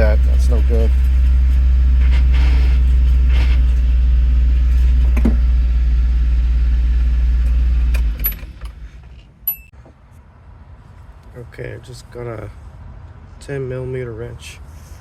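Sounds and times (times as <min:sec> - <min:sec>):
car engine idling: 0:00.0 - 0:09.2.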